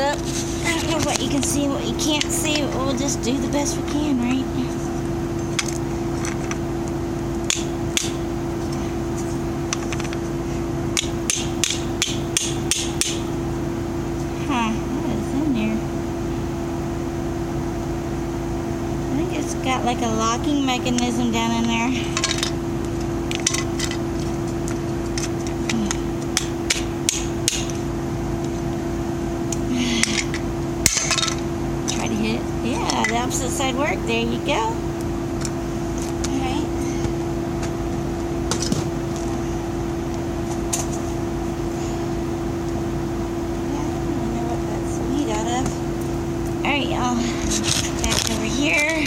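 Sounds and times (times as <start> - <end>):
steady low hum: 0.0 - 49.0
hammer tapping on metal: 11.0 - 13.2
hammer striking scrap metal: 11.0 - 13.3, 26.4 - 27.8, 30.0 - 31.4.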